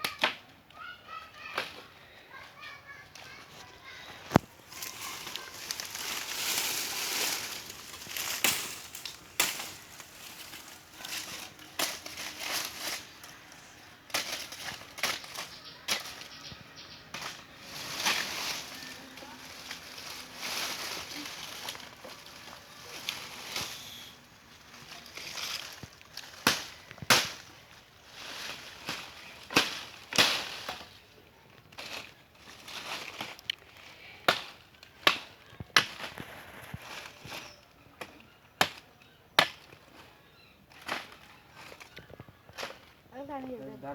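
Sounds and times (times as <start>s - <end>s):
leaves and branches rustling: 0.0s - 43.9s
axe chopping tree: 26.4s - 27.5s, 34.2s - 36.2s, 38.0s - 39.8s.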